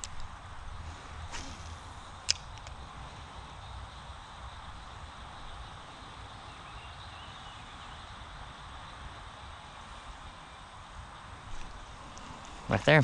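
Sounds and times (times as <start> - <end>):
outdoor background noise: 0.0 - 13.0.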